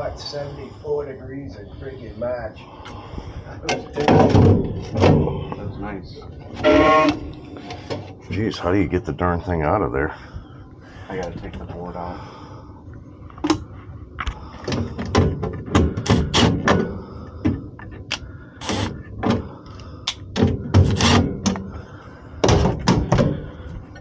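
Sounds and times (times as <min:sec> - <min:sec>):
knocks and clatter of parts: 0:03.7 - 0:05.5, 0:14.2 - 0:19.5, 0:20.3 - 0:21.7, 0:22.4 - 0:24.0.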